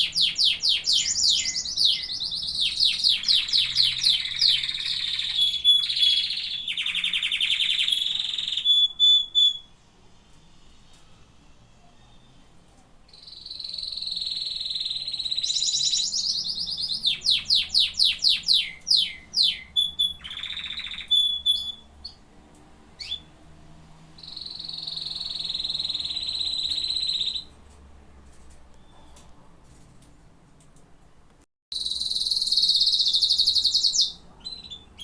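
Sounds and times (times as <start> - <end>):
canary singing trills: 0.0 - 10.0, 13.1 - 22.3, 23.0 - 23.4, 24.2 - 27.6, 31.7 - 35.0.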